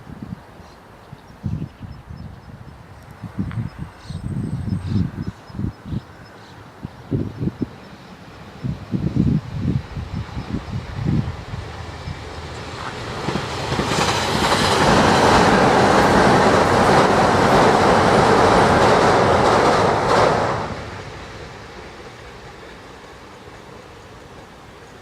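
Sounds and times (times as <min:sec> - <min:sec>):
electric train passing at speed: 0:00.0 - 0:25.0
wheels clacking over rail joints: 0:11.4 - 0:24.6.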